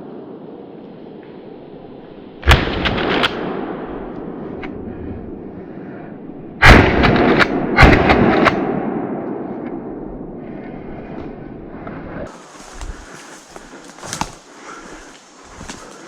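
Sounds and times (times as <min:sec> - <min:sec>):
gunshots: 0:02.4 - 0:03.8, 0:06.6 - 0:09.2.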